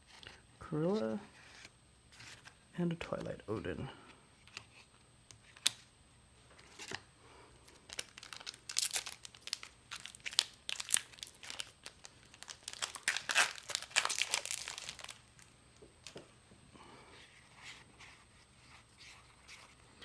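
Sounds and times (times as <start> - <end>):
foil wrapper crackling: 7.7 - 16.2.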